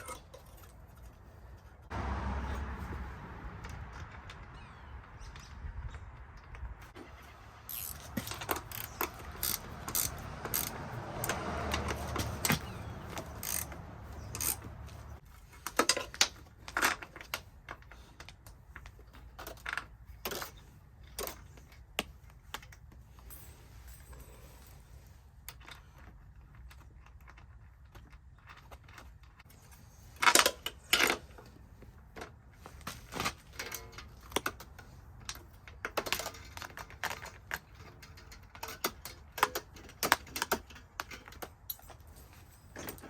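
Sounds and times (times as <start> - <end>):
hand ratchet clicking: 7.7 - 15.0
metal hardware clinking: 33.2 - 43.0.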